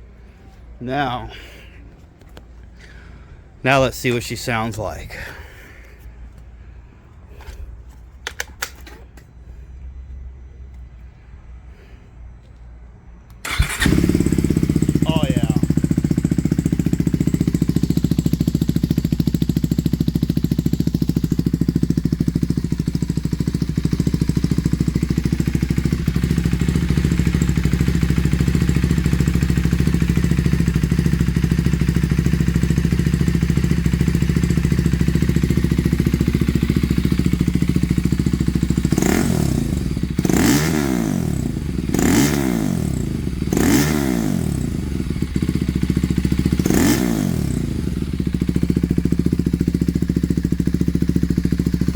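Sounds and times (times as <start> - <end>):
motorcycle throttle blips: 13.2 - 40.8
motorcycle engine idling: 13.4 - 51.9.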